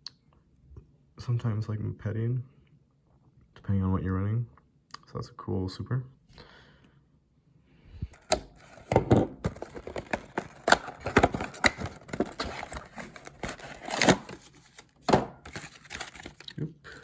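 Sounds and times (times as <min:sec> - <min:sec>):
packaging crinkling: 0:08.2 - 0:16.6.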